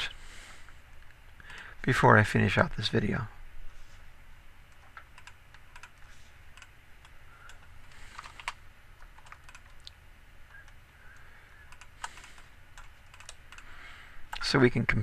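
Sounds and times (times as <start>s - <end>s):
faint low hum: 0.0s - 15.0s
keyboard keystroke clicks: 4.7s - 10.0s.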